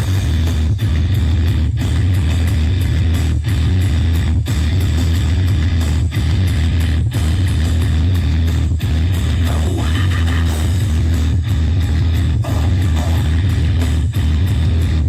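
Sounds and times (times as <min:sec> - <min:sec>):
loud rock music: 0:00.0 - 0:15.0.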